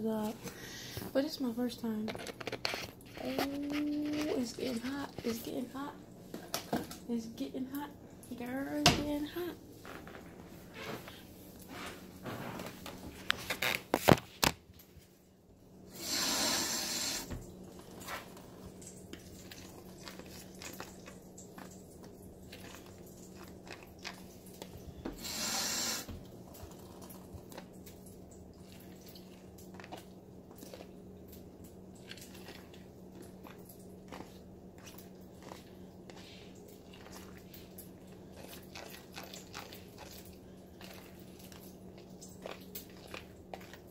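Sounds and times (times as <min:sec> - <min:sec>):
steady low hum: 0:00.0 - 0:43.9
short bursts of hissing: 0:15.9 - 0:17.3, 0:25.2 - 0:26.1.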